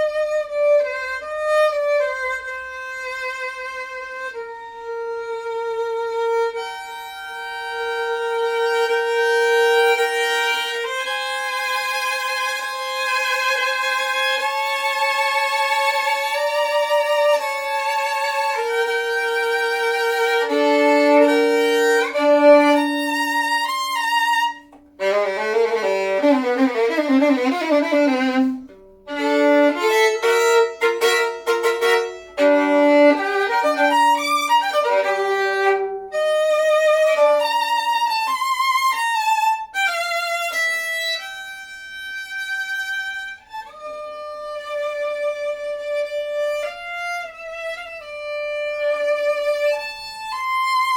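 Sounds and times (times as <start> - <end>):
solo violin melody: 0.0 - 50.9.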